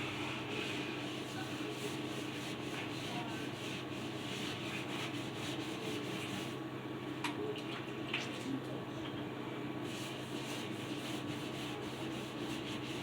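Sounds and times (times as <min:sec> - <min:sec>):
hand scrubbing a wall: 0:00.0 - 0:06.6, 0:09.8 - 0:13.0.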